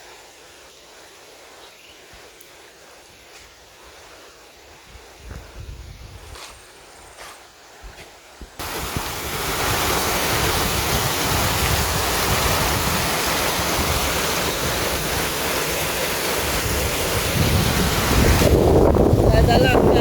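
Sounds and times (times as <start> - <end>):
wind buffeting microphone: 4.7 - 6.5, 8.5 - 20.0.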